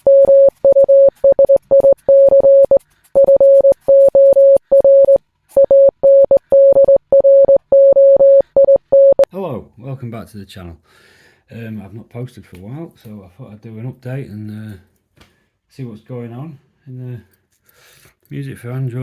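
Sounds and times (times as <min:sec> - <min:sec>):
electronic morse beeps: 0:00.0 - 0:09.3.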